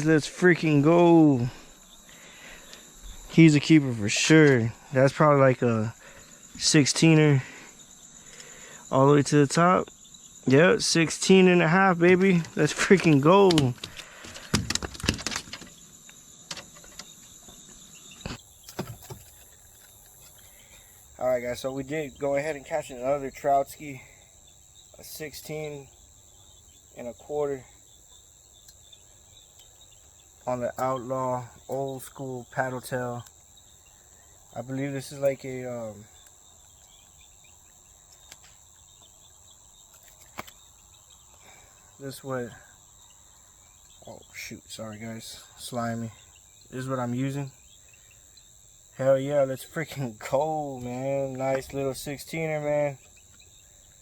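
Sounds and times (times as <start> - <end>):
faint insect chirring: 0.0 - 54.0
sharp clicks and knocks: 12.1 - 15.8, 16.5 - 17.2.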